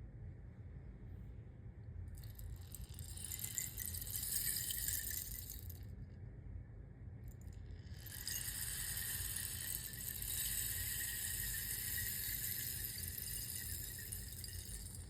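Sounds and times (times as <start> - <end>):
rainstick pebbles trickling: 2.2 - 5.8, 7.9 - 15.0.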